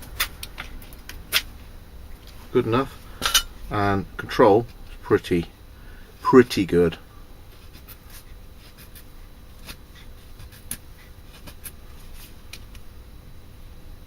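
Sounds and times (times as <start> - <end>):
knife scraping wood: 7.6 - 12.4.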